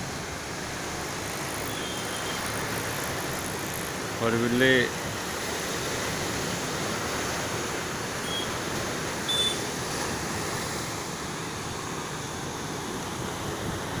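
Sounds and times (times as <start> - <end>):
sea waves washing on shore: 0.0 - 14.0
short high-pitched chirps: 1.6 - 2.4.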